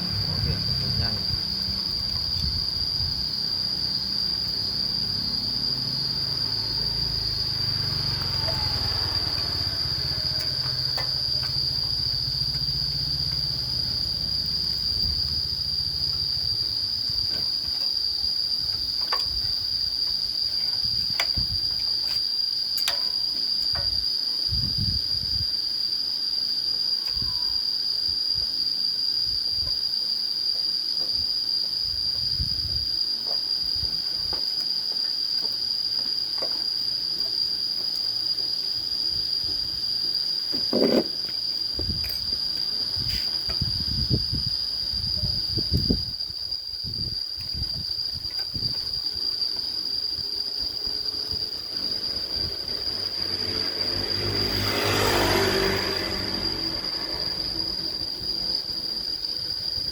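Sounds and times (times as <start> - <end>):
low rumble: 0.0 - 3.3
insects shrilling: 0.0 - 30.0.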